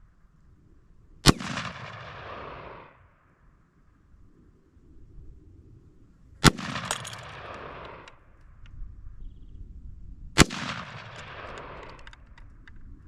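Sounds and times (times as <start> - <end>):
rifle shots echoing: 1.2 - 3.1, 6.4 - 8.3, 10.4 - 12.4.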